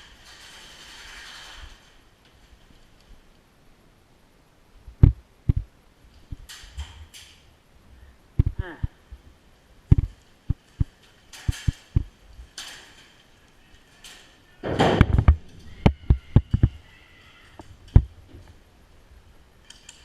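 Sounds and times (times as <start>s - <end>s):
rustling: 0.0s - 3.5s, 4.9s - 20.0s
footsteps thudding: 5.0s - 5.7s, 9.9s - 10.2s.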